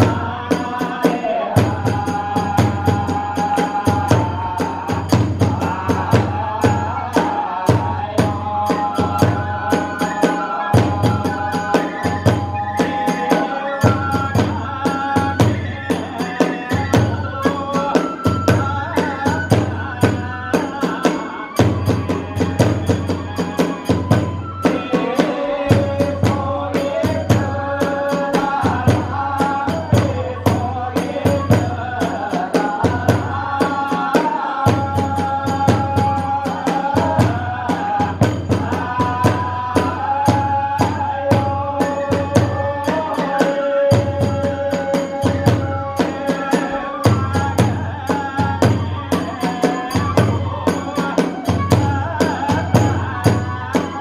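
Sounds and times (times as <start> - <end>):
fast drum beats: 0.0 - 54.0
bamboo flute melody: 5.8 - 43.3, 43.9 - 54.0.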